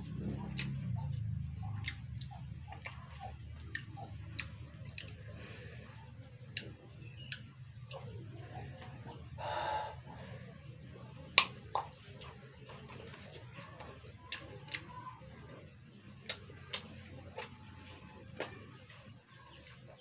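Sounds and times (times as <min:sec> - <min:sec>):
small birds chirping: 0:00.0 - 0:20.0
steady low hum: 0:00.0 - 0:20.0.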